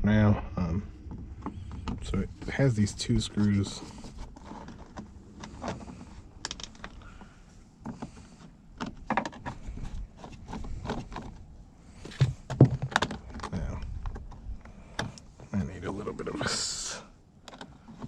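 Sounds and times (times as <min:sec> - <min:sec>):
small parts being handled: 0:03.4 - 0:07.2.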